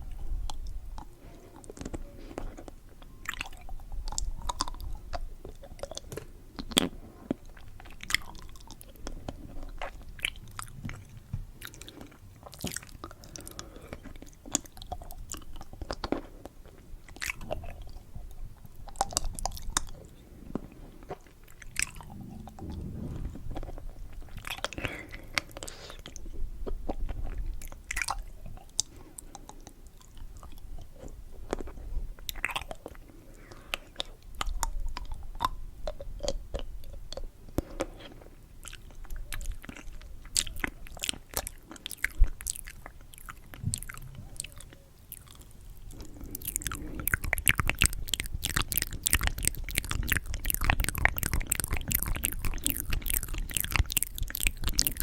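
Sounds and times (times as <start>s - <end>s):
candy crunching: 0.4s - 55.0s
wet mouth smacks: 46.4s - 55.0s.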